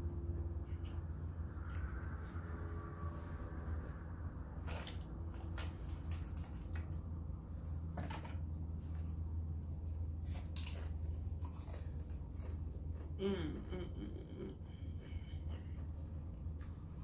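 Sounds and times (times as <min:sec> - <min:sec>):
steady low hum: 0:00.0 - 0:17.0
person chewing with smacks: 0:09.9 - 0:17.0.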